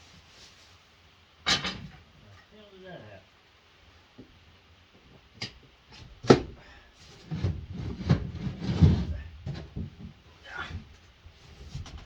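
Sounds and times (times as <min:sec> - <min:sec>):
objects thudding and knocking: 0:06.0 - 0:12.0.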